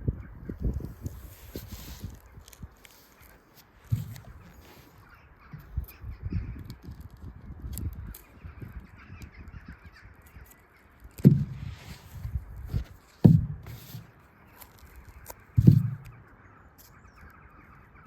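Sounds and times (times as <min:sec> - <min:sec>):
soft knocks: 0:11.2 - 0:14.1, 0:15.6 - 0:16.2.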